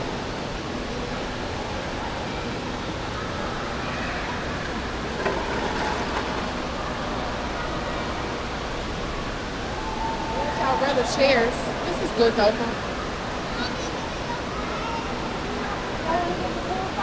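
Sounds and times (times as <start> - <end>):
knock: 4.6 - 6.6.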